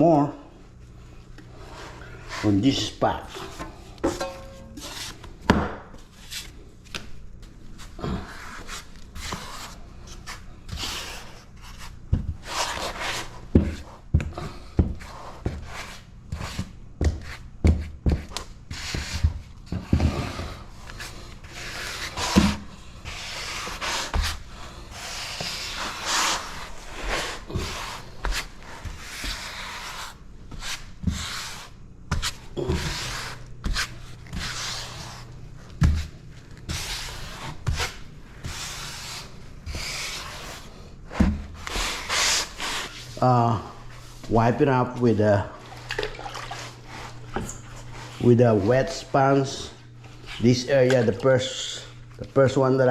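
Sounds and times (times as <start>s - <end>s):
grout float scraping tiles: 8.0s - 14.0s, 18.1s - 43.2s, 45.2s - 51.9s.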